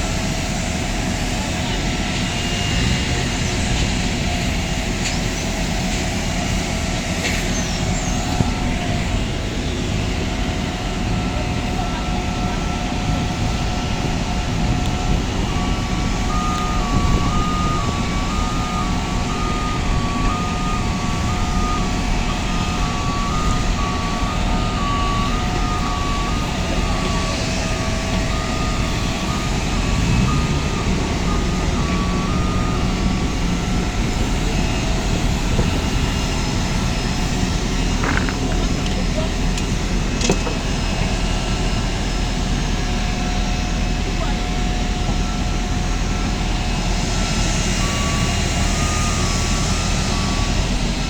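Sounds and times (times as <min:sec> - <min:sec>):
aircraft rumbling hum: 0:00.0 - 0:51.0
constant whining tones: 0:00.0 - 0:51.0
two-pitch warning beeper: 0:11.0 - 0:38.6.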